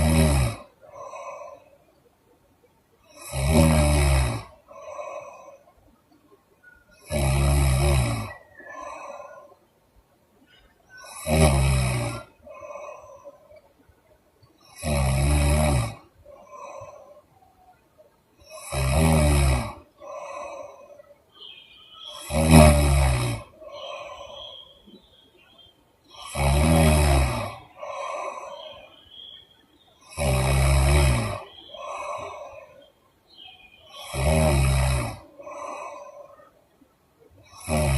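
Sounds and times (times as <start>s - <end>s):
woman snoring: 0.0s - 1.6s, 3.1s - 5.6s, 7.0s - 9.5s, 11.0s - 13.5s, 14.7s - 17.2s, 18.4s - 21.1s, 22.1s - 24.7s, 26.1s - 29.0s, 30.0s - 32.9s, 33.9s - 36.6s, 37.4s - 37.9s
breathy exhale: 12.4s - 13.7s, 20.0s - 21.2s, 23.6s - 24.8s, 27.5s - 29.4s, 31.5s - 34.2s, 35.3s - 36.6s.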